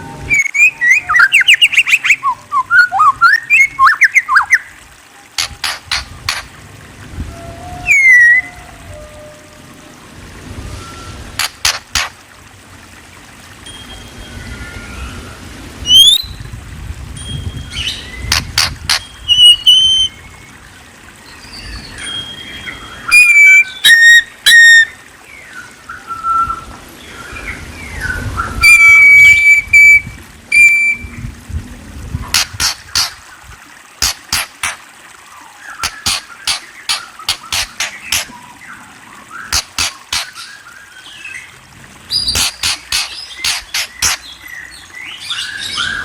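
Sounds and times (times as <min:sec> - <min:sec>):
songbird whistling song: 0:00.2 - 0:04.8, 0:07.3 - 0:09.3, 0:14.3 - 0:16.4, 0:17.3 - 0:20.5, 0:21.2 - 0:31.2, 0:35.7 - 0:41.5, 0:42.1 - 0:46.0
sharp bird clicks: 0:05.4 - 0:06.5, 0:11.4 - 0:12.2, 0:18.3 - 0:19.7, 0:32.3 - 0:33.2, 0:34.0 - 0:34.8, 0:35.8 - 0:38.3, 0:39.5 - 0:40.6, 0:42.2 - 0:44.3.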